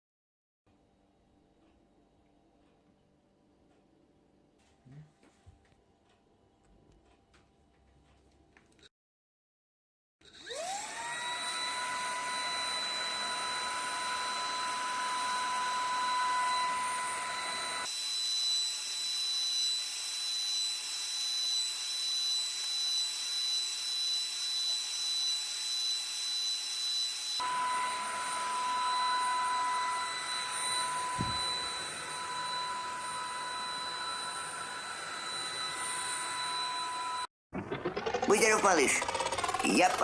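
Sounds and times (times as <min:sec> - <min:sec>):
vacuum cleaner motor whining: 0:10.2 - 0:37.3.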